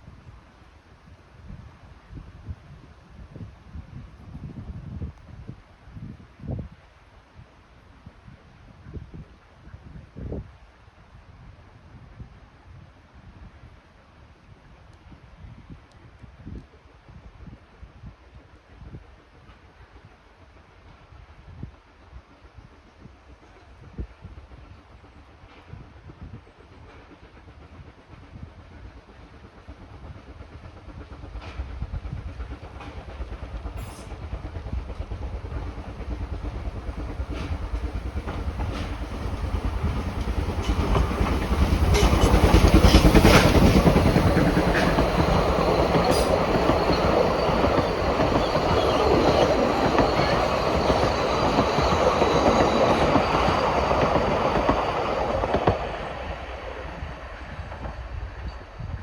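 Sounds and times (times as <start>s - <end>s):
steam train passing: 18.5s - 59.0s
wheels clacking over rail joints: 32.6s - 56.8s.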